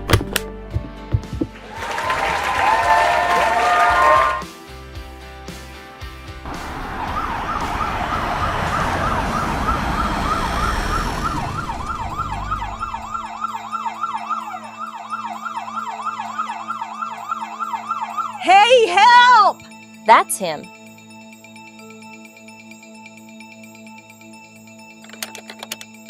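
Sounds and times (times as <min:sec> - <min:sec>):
siren wailing: 0:01.8 - 0:04.5, 0:06.5 - 0:19.6
low rumble: 0:06.6 - 0:13.3.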